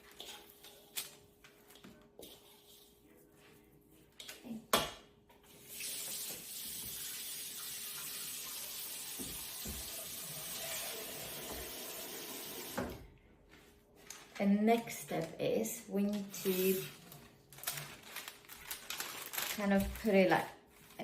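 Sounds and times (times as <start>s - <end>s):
kitchen tap running into sink: 5.7s - 13.0s.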